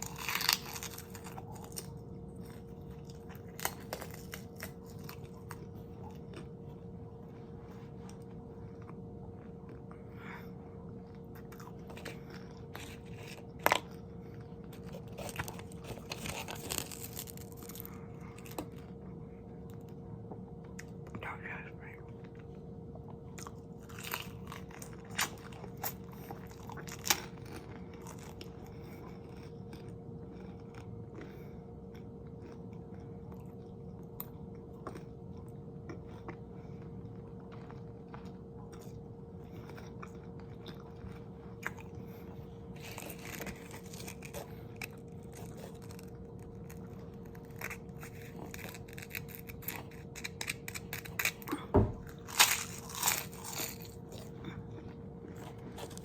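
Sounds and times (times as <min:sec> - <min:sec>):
chewing and crunching food: 0:00.0 - 0:56.0
faint steady hum: 0:00.0 - 0:56.0.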